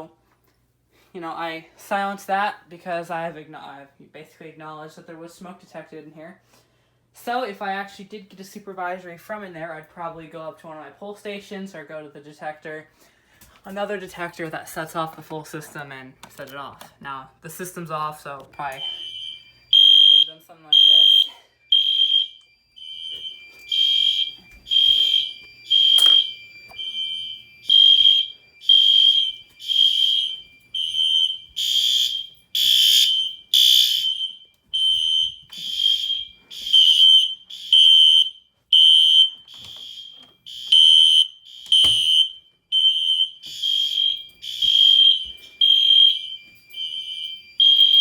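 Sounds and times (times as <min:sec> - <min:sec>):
fire alarm horn pulsing: 0:18.5 - 0:48.0.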